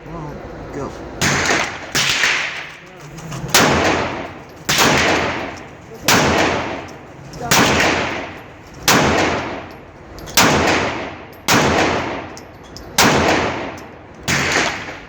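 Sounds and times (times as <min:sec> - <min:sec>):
pistol shots with echo: 0:01.2 - 0:02.8, 0:03.5 - 0:06.9, 0:07.5 - 0:09.7, 0:10.3 - 0:12.4, 0:13.0 - 0:15.0.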